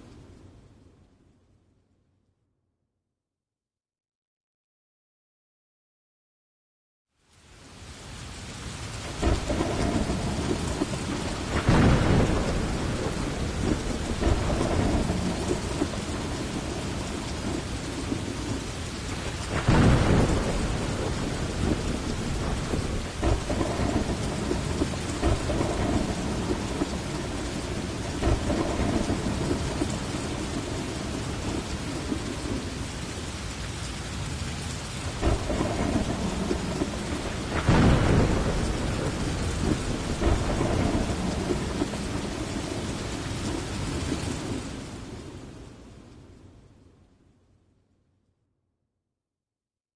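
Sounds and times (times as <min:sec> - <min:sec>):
heavy rain: 0:00.0 - 0:01.0, 0:07.1 - 0:47.2
loud thunderclaps: 0:09.0 - 0:32.9, 0:35.0 - 0:45.3
rolling thunder: 0:09.0 - 0:33.4, 0:34.2 - 0:45.7.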